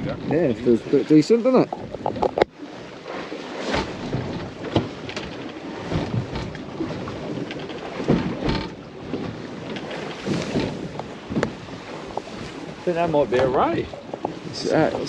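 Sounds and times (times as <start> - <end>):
wind on microphone: 0.0 - 0.9, 1.6 - 2.6
water slapping against boat hull: 0.0 - 15.0.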